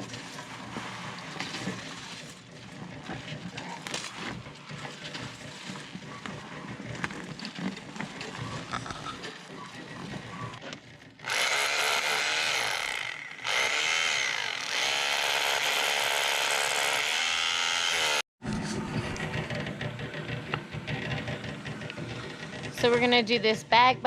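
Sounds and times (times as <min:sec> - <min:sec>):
hammer drill on concrete: 0:11.2 - 0:18.2.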